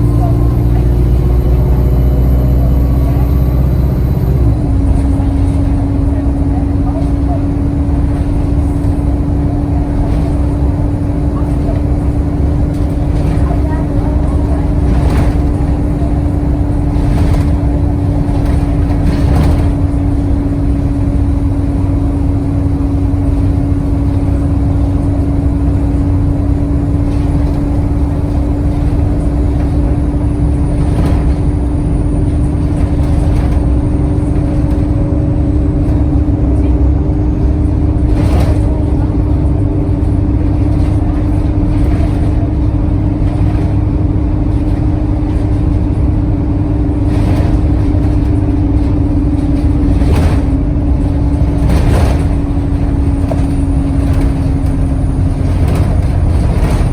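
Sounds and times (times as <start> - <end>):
bus engine and road rumble: 0.0 - 56.9
constant whine: 0.0 - 56.9
knocks and rattles: 11.5 - 21.2, 46.8 - 56.9.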